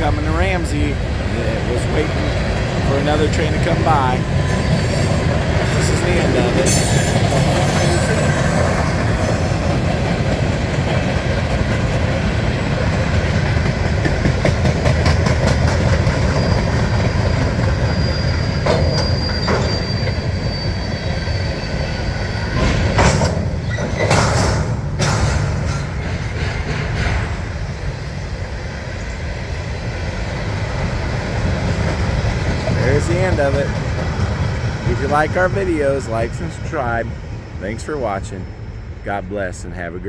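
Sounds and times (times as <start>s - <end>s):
wheels clicking over rail joints: 0.0s - 20.5s, 22.6s - 28.3s
freight cars rumbling: 0.0s - 40.0s
high wheel squeal: 0.1s - 10.4s, 15.0s - 28.2s, 31.7s - 39.8s
sharp clanks: 22.6s - 27.8s.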